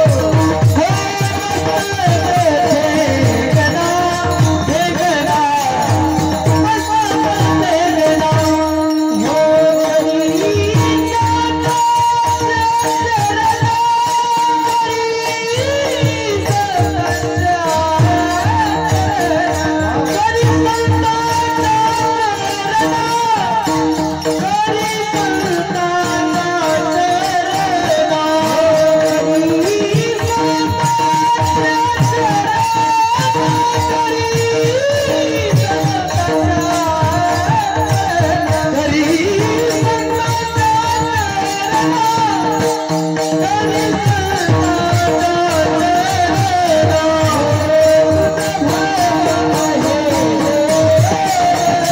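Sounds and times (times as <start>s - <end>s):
person singing devotional melody: 0.0s - 51.9s.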